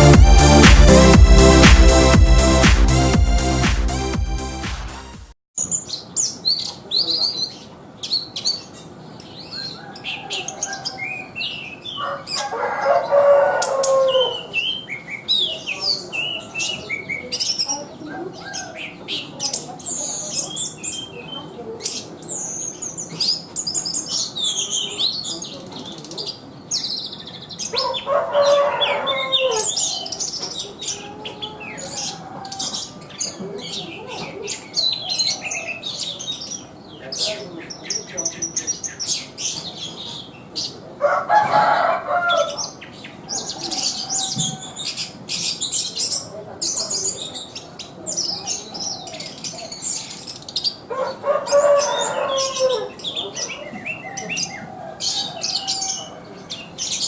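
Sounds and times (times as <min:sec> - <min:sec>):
thrush singing: 0:00.0 - 0:05.4.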